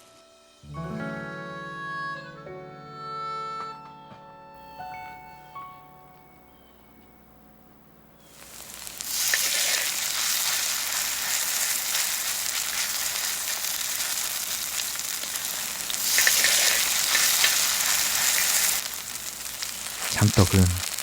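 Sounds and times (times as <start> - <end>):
batter sizzling in oil: 8.2 - 21.0.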